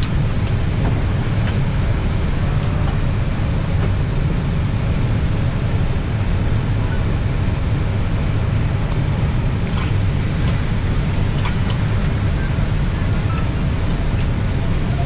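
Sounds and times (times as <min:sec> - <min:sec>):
moving vehicle rumble: 0:00.0 - 0:15.0.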